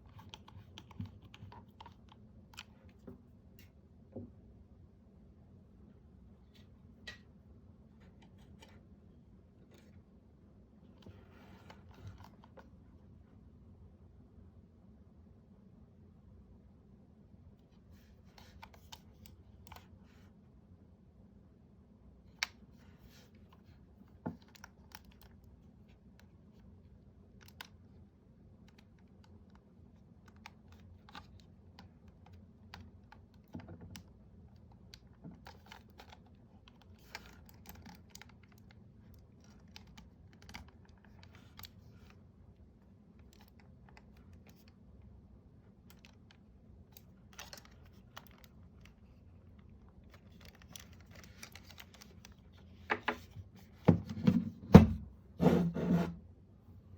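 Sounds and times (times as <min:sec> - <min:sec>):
small clicks and taps: 0:00.0 - 0:04.4, 0:28.6 - 0:42.2.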